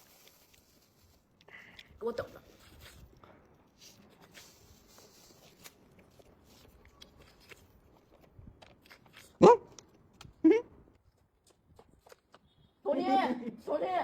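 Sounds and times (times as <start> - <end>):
dog barking: 9.4 - 9.8.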